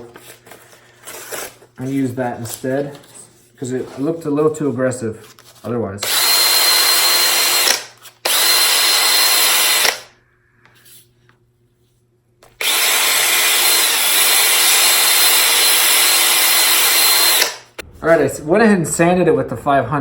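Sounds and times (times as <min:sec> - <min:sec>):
electric drill spinning against sandpaper: 0:06.0 - 0:10.1, 0:12.5 - 0:17.8.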